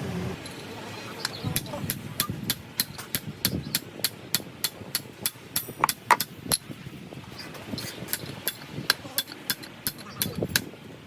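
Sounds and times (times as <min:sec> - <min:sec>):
metal tools knocking on metal: 0:08.1 - 0:10.7.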